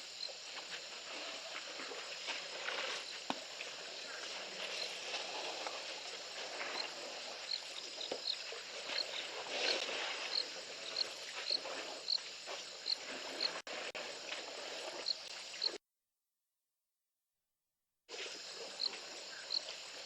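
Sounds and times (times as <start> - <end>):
insect chirping: 5.8 - 15.8, 18.2 - 20.0.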